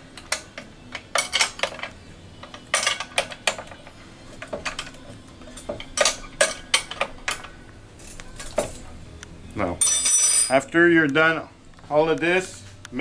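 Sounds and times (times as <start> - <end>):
wrench clinking on metal bolts: 0.2 - 8.8, 9.8 - 10.7.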